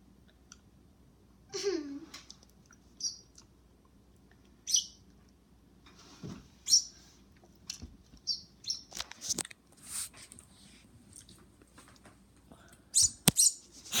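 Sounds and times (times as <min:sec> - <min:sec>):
small bird chirping: 0:03.0 - 0:03.4, 0:04.6 - 0:05.0, 0:06.6 - 0:07.0, 0:08.2 - 0:09.0, 0:13.0 - 0:13.7.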